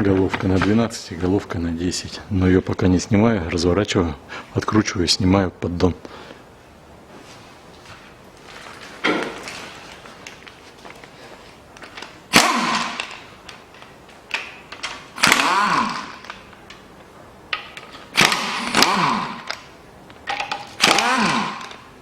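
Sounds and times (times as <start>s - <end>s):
cordless power tool whirring: 12.3s - 13.3s, 14.8s - 16.4s, 18.1s - 19.7s, 20.5s - 21.9s.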